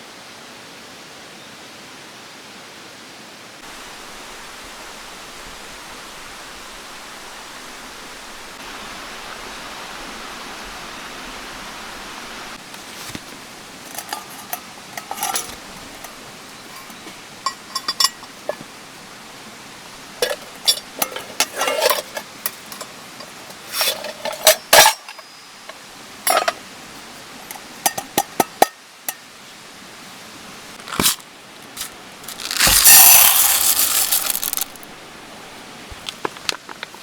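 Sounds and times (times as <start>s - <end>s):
metal cookware clinking: 13.8s - 19.1s, 20.1s - 26.7s, 27.4s - 29.2s, 31.8s - 34.8s
loud hiss: 30.8s - 36.1s.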